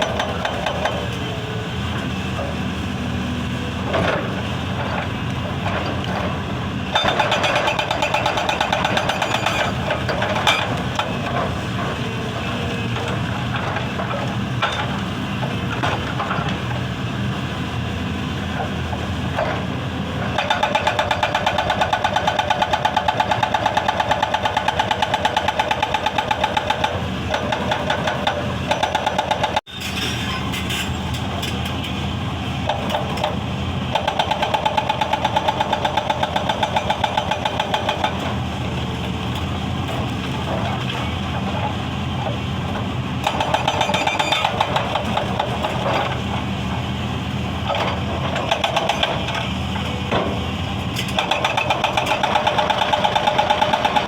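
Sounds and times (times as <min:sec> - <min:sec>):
diesel engine running: 0:00.0 - 0:54.0
hydraulic breaker hammering stone: 0:06.9 - 0:11.4, 0:20.3 - 0:29.7, 0:32.6 - 0:38.3, 0:43.2 - 0:46.2, 0:47.7 - 0:49.5, 0:51.1 - 0:54.0.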